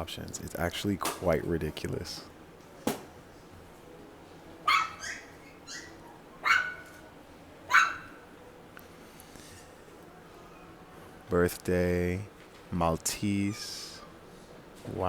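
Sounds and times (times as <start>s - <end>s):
small dog barking: 4.6s - 7.0s, 7.7s - 8.2s.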